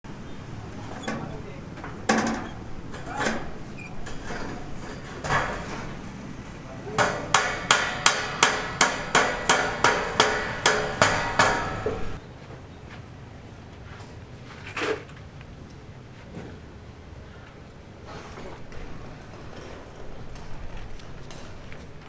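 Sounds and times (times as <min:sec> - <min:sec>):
hammer strikes ringing: 0:00.8 - 0:12.2.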